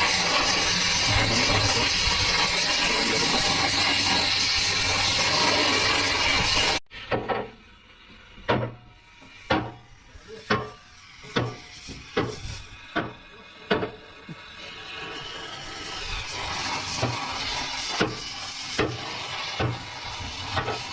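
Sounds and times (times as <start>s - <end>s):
hammer strikes: 10.5s - 12.4s.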